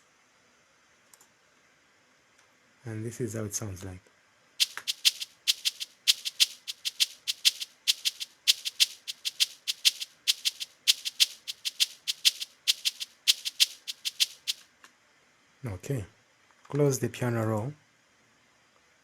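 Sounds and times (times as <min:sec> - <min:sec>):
shaker loop: 0:04.6 - 0:14.6.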